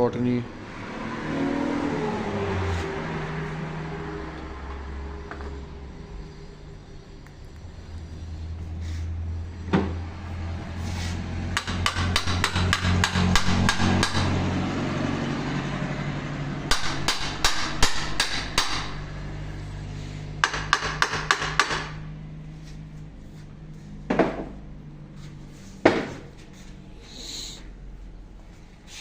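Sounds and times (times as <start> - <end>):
steady low hum: 2.2 - 29.0
hammer tapping on metal: 11.6 - 14.4, 16.7 - 19.0, 20.4 - 22.0.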